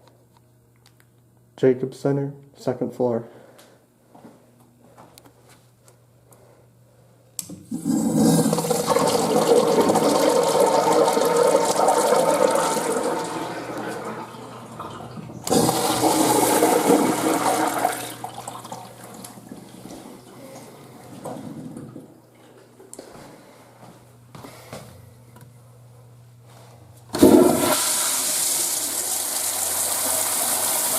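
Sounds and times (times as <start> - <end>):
toilet water rushing: 7.6 - 20.4, 27.2 - 30.9.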